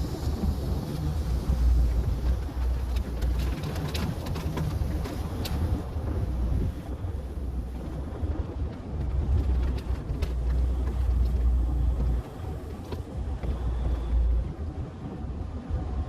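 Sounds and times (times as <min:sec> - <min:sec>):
truck engine rumbling: 0:00.0 - 0:16.0
faint clicks: 0:00.9 - 0:05.9.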